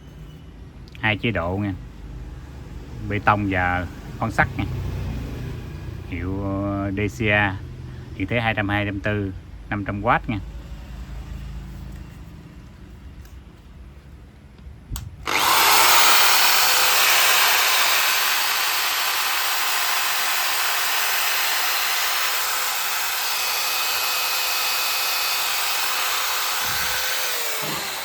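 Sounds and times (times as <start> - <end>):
electric drill motor whine: 15.3 - 28.0.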